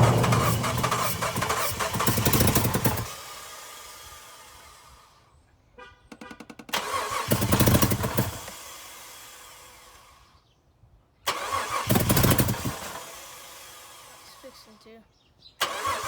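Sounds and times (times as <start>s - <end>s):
engine cranking and firing: 0.0s - 3.0s, 11.3s - 12.9s, 15.6s - 16.0s.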